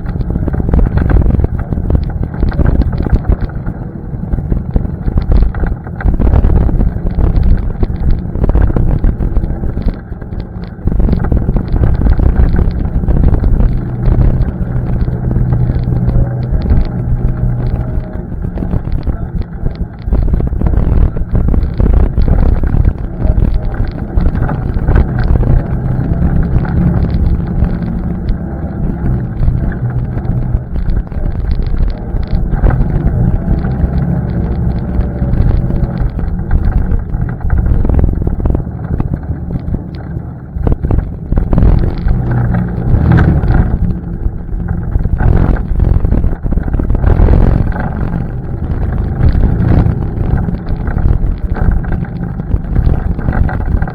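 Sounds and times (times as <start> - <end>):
atv engine running: 0.0 - 53.9
wind buffeting microphone: 0.0 - 53.9.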